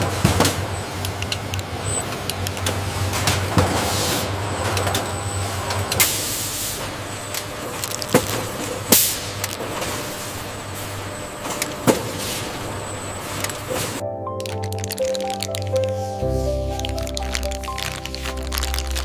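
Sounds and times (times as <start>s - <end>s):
machinery hum and hiss: 0.0s - 14.0s.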